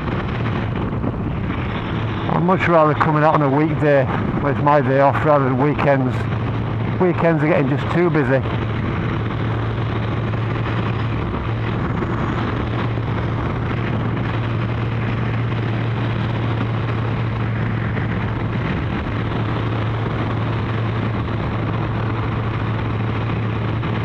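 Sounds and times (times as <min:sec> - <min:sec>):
motorcycle engine cruising: 0:00.0 - 0:24.0
wind rush and road noise: 0:00.0 - 0:24.0.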